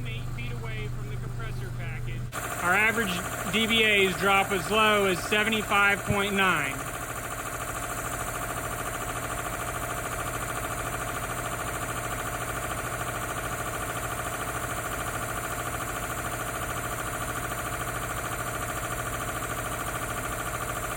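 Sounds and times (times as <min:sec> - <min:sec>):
air compressor running: 0:00.0 - 0:20.9.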